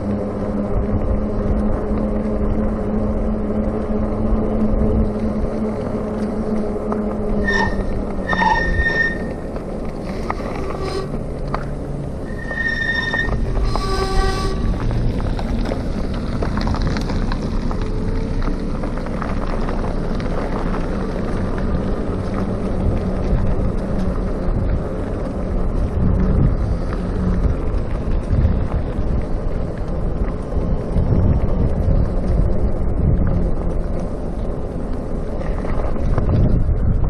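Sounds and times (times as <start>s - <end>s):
road rumble: 0.0s - 37.0s
wind buffeting microphone: 0.0s - 37.0s
bike brakes squealing: 7.4s - 9.5s, 10.1s - 11.2s, 12.2s - 14.8s.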